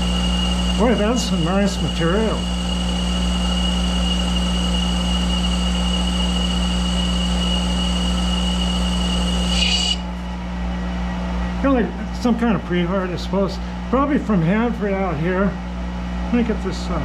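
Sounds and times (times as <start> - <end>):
high whine of metal cutting: 0.0 - 10.2
lathe humming: 0.0 - 10.2.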